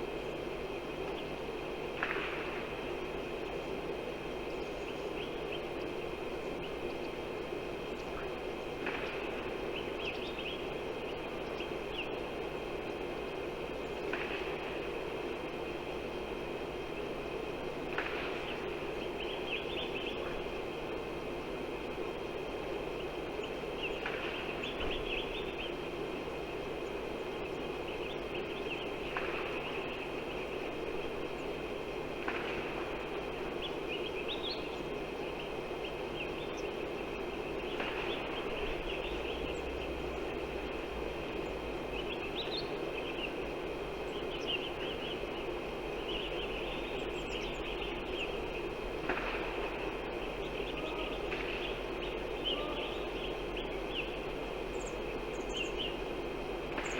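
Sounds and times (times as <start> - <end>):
outdoor background noise: 0.0 - 56.9
small birds chirping: 41.3 - 56.1.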